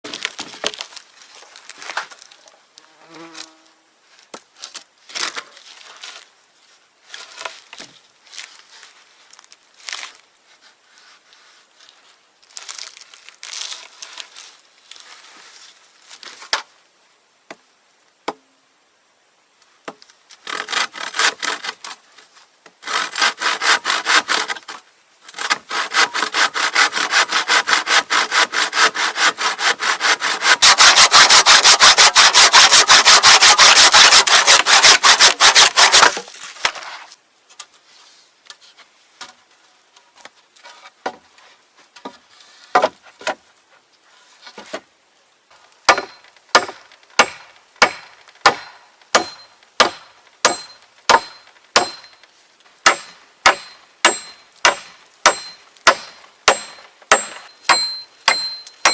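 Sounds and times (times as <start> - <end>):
hand saw cutting wood: 20.4 - 22.0, 22.8 - 37.0, 52.9 - 58.9.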